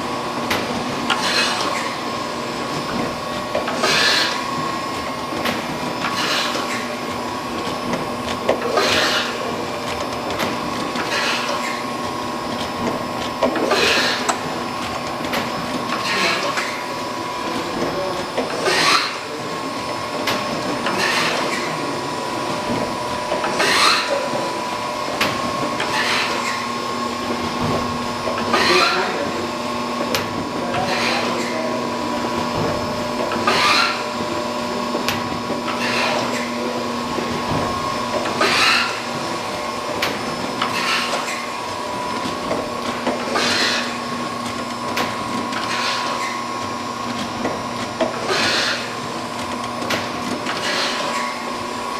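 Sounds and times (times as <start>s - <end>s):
surface grinder whining: 3.7s - 5.3s, 7.8s - 14.4s, 15.8s - 20.1s, 20.7s - 32.2s, 32.8s - 47.0s, 48.2s - 49.0s
grinder table reversing: 32.8s - 47.0s, 47.6s - 49.8s.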